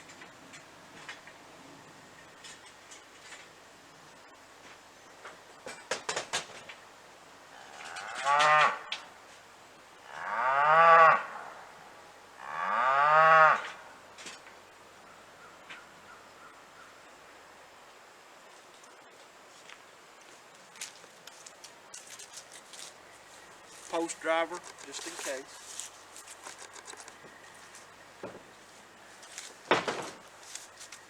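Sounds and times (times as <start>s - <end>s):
cow mooing: 7.5s - 8.9s, 10.0s - 11.6s, 12.4s - 13.8s
sharp clicks: 24.1s - 25.5s, 26.2s - 27.4s.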